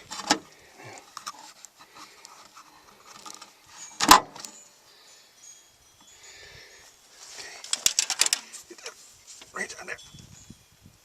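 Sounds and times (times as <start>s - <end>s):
hand tools clinking on metal: 7.2s - 9.0s.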